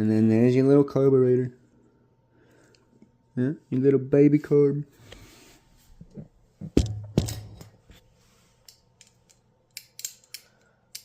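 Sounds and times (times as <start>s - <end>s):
metal parts clicking and knocking: 6.8s - 7.8s, 8.7s - 11.0s.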